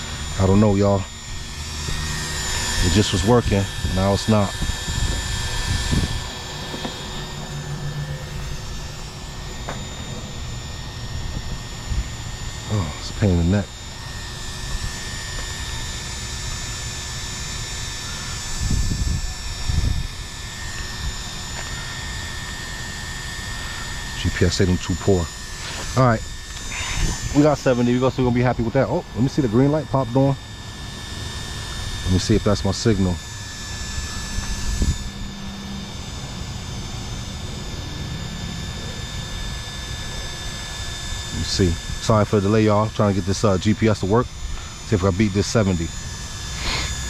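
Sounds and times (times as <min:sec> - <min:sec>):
wind buffeting microphone: 0:00.0 - 0:13.1, 0:18.2 - 0:21.6, 0:24.5 - 0:30.2, 0:30.8 - 0:35.6
faint high whine: 0:00.0 - 0:47.0.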